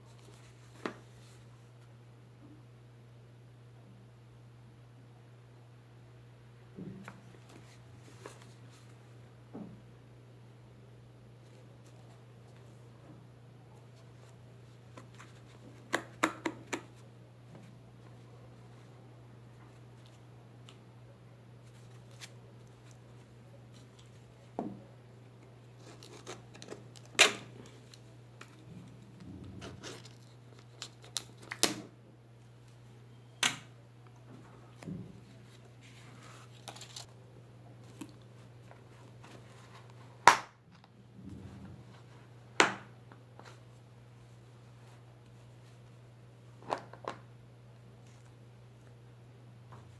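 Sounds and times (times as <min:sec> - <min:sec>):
packaging rustling and scraping: 0:25.7 - 0:31.4, 0:35.3 - 0:37.1.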